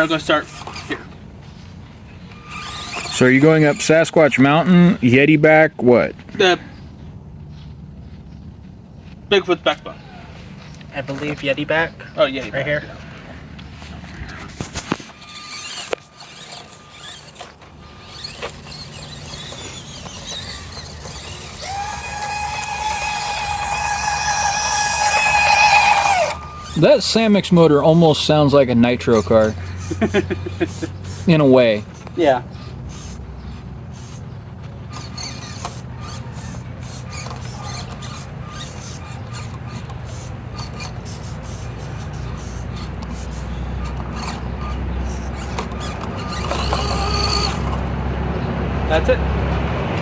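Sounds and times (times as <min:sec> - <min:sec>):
ticks and scrapes on rocks: 0:00.0 - 0:04.6, 0:13.6 - 0:48.0
small electric motor whining: 0:00.0 - 0:04.9, 0:14.0 - 0:49.2.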